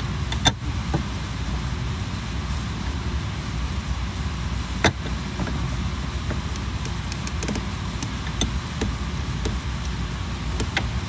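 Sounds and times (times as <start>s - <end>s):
engine running: 2.7s - 11.0s
hand tools clicking on engine parts: 6.2s - 9.9s, 10.5s - 11.0s.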